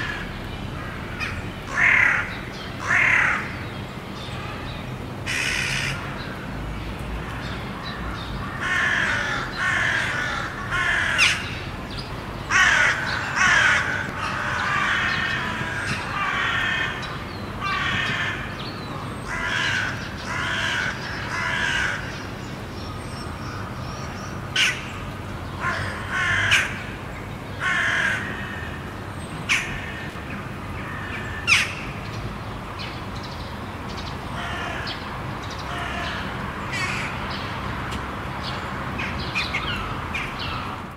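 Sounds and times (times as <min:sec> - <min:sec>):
crows cawing: 0:00.0 - 0:03.6, 0:05.3 - 0:06.5, 0:07.3 - 0:11.7, 0:12.5 - 0:22.3, 0:23.4 - 0:25.0, 0:25.6 - 0:27.0, 0:27.6 - 0:31.9, 0:34.3 - 0:35.0, 0:35.7 - 0:37.2.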